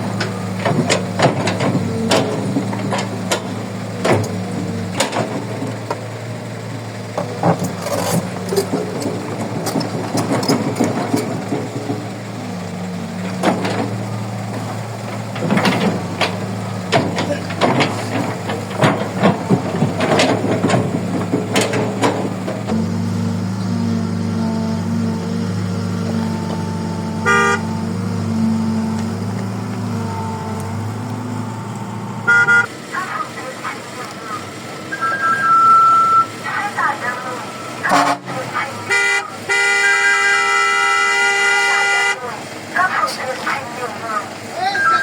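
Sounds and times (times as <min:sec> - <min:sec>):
clanks and knocks of digging: 0:00.0 - 0:32.0
excavator diesel engine running: 0:00.0 - 0:45.0.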